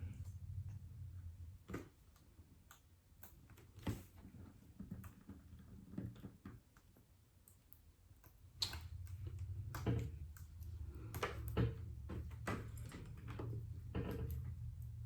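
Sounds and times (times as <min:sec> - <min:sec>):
low hum: 0:00.0 - 0:01.7.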